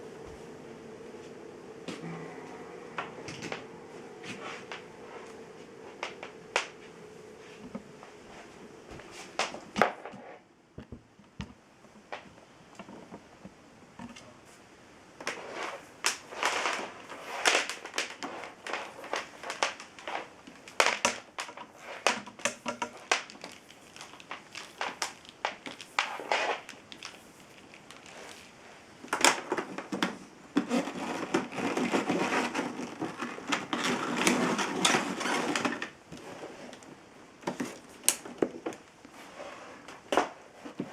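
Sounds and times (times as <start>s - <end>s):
vacuum cleaner handling clicks and knocks: 17.5s - 27.2s.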